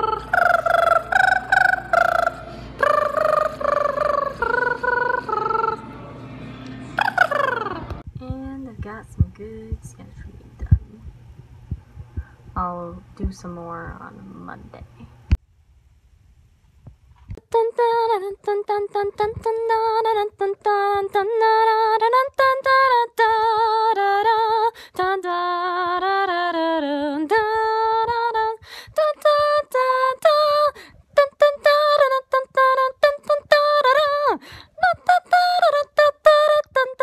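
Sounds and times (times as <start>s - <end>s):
woman singing wordlessly: 0.0s - 5.8s, 7.0s - 11.0s, 17.4s - 37.0s.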